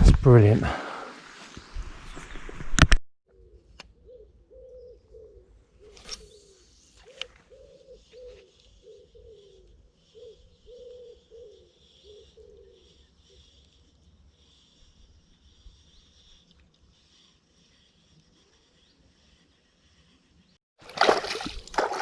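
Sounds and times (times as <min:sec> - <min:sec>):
dove cooing: 0:03.3 - 0:06.0, 0:07.0 - 0:13.4
small birds chirping faintly: 0:03.3 - 0:20.6.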